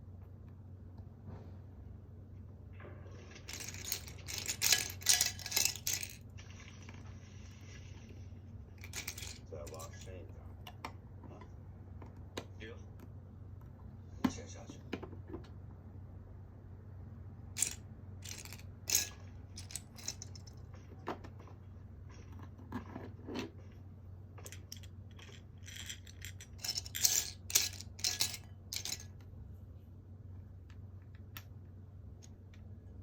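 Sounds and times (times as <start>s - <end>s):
faint low hum: 0.0s - 33.0s
plastic bricks clicking and clattering: 3.5s - 6.2s, 8.8s - 10.1s, 17.6s - 20.6s, 24.4s - 29.2s.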